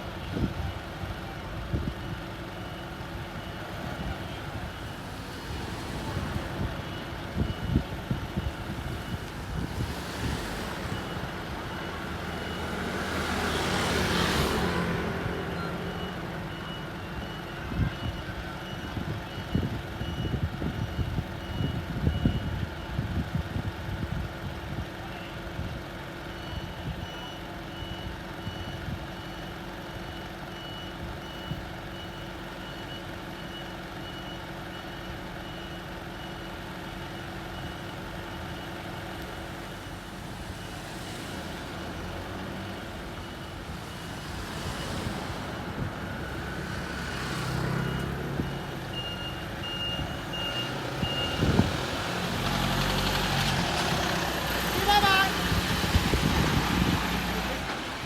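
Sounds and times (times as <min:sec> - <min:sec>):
truck engine idling: 0:00.0 - 0:09.9, 0:15.3 - 0:55.3
reversing alarm beeping: 0:00.2 - 0:22.9, 0:26.3 - 0:39.6, 0:40.5 - 0:51.7
vehicle passing: 0:39.7 - 0:48.9.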